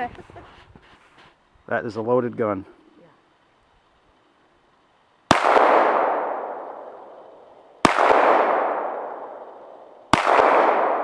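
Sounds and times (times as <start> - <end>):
pistol shots: 5.3 - 7.2, 7.8 - 11.0.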